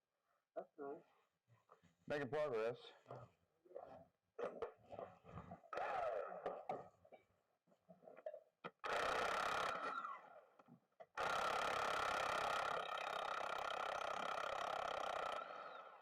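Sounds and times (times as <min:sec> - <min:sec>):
impact wrench whine and hammering: 0:08.8 - 0:10.2, 0:11.2 - 0:16.0.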